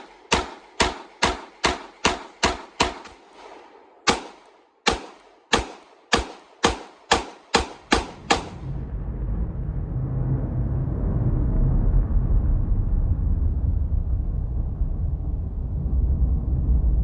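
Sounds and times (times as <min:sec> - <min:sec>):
pistol shots: 0:00.0 - 0:08.6.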